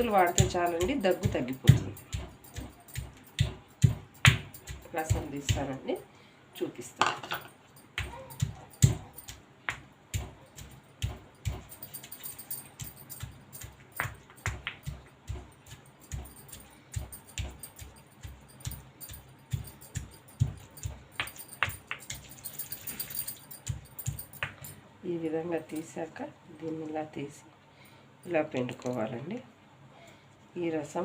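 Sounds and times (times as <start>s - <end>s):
stone pestle pounding paste: 0.0s - 6.0s, 7.9s - 24.7s.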